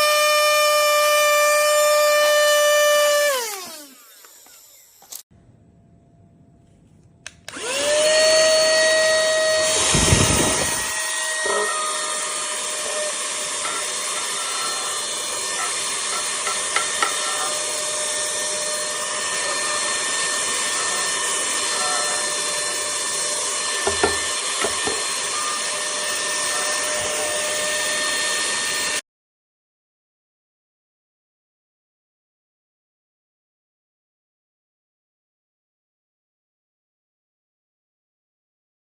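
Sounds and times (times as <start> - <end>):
mini vacuum whining: 0.0 - 5.2, 7.3 - 29.0.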